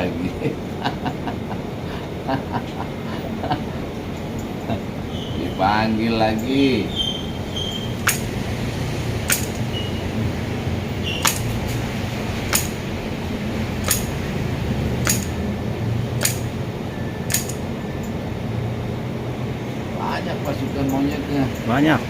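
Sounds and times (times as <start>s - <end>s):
steady low hum: 0.0s - 22.0s
sharp short clicks: 7.7s - 8.4s, 9.2s - 9.8s, 11.1s - 11.8s, 12.4s - 12.9s, 13.8s - 14.2s, 15.0s - 15.4s, 16.2s - 16.6s, 17.2s - 18.2s.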